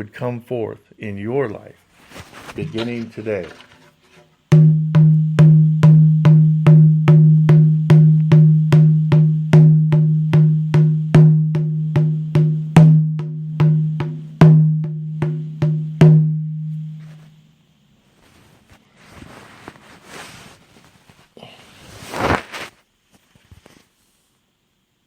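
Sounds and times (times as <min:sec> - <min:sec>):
hand drum beaten steadily: 0:04.5 - 0:17.0.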